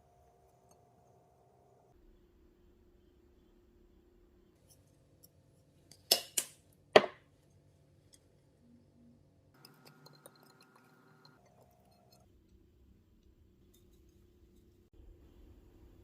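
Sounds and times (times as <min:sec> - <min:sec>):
tableware clinking: 0:09.6 - 0:12.2.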